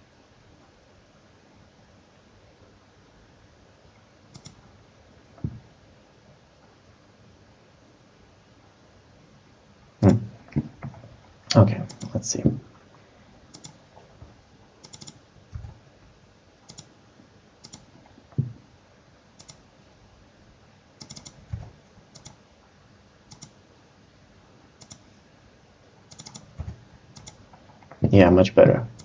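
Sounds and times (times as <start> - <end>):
computer mouse and keyboard clicks: 4.3 - 4.6, 10.1 - 12.2, 13.5 - 15.8, 16.7 - 16.9, 17.6 - 18.5, 19.4 - 19.6, 21.0 - 22.4, 23.3 - 23.6, 24.8 - 25.0, 26.1 - 28.0
soft low thumps: 5.4 - 5.7, 18.4 - 18.6.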